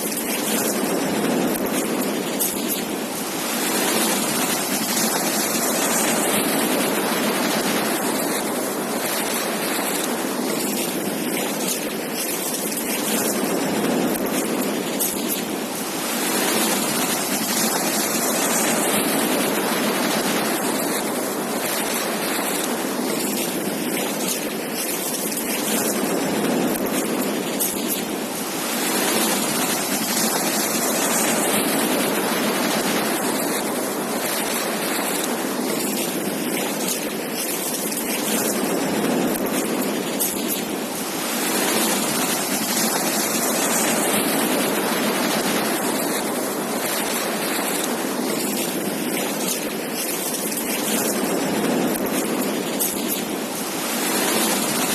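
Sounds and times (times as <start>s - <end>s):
ocean waves breaking on beach: 0.0s - 54.9s.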